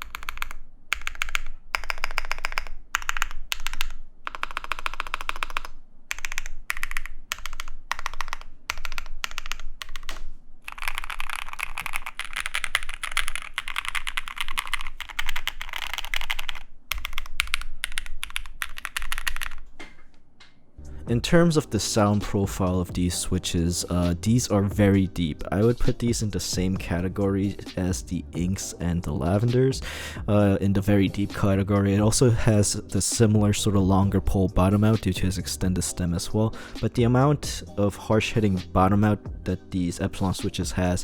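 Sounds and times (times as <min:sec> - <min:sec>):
typing on mechanical keyboard: 0:00.0 - 0:19.7.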